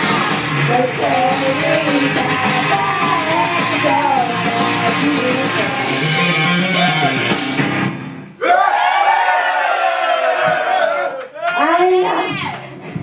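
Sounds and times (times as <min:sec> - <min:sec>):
person singing: 0:00.0 - 0:07.4
electric guitar: 0:00.0 - 0:08.3
live rock music: 0:00.0 - 0:08.4.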